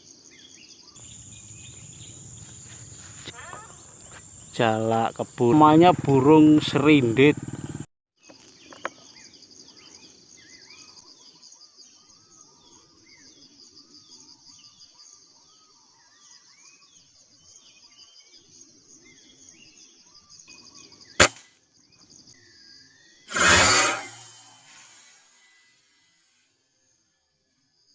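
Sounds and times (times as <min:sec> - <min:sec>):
insects droning: 0:00.0 - 0:11.0, 0:18.4 - 0:27.9
small birds chirping: 0:00.4 - 0:15.7
air rifle shot: 0:21.2 - 0:21.4.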